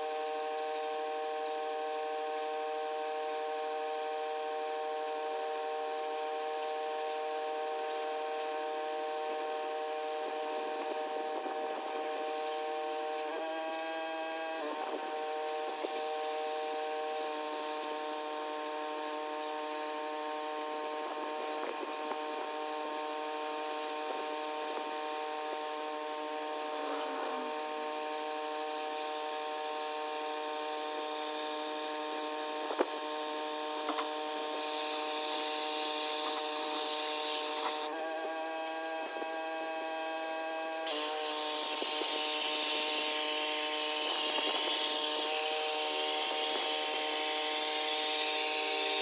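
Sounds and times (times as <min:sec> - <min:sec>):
hiss of water spray: 0:14.6 - 0:37.8, 0:40.9 - 0:49.0
pressure washer humming: 0:14.6 - 0:38.0.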